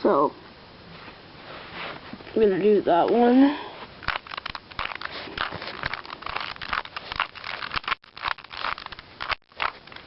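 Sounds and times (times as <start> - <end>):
puzzle cube clicking and scraping: 4.0 - 10.0.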